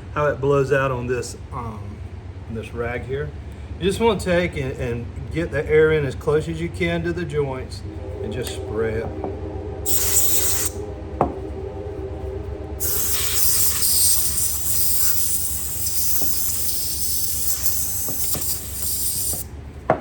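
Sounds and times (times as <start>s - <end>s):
compressed air hissing: 9.8s - 10.9s, 12.8s - 19.5s.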